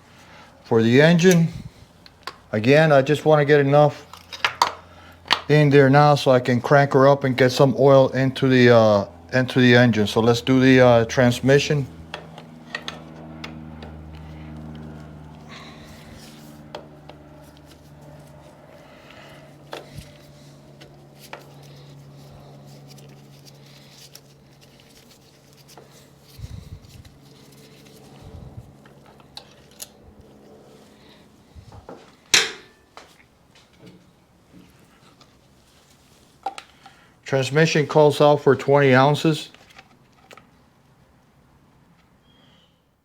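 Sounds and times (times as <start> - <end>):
low steady hum: 0.0 - 42.4
tools clicking and clanking: 32.3 - 33.1.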